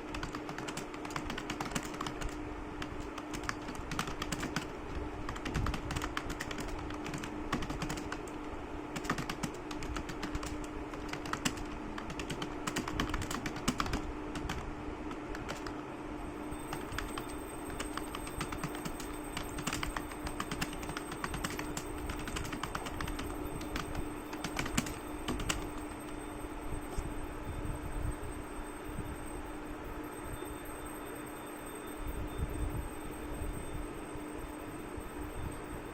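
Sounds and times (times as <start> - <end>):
fast keyboard typing: 0.0 - 15.8, 16.5 - 26.3
steady low hum: 0.0 - 35.9.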